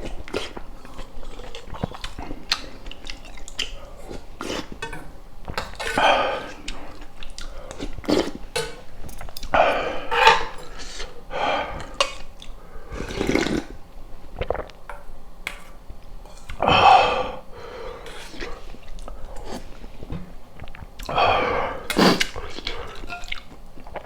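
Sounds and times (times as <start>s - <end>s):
chewing and mouth sounds: 0.0s - 4.8s, 5.4s - 11.2s, 11.8s - 14.8s, 18.1s - 24.0s.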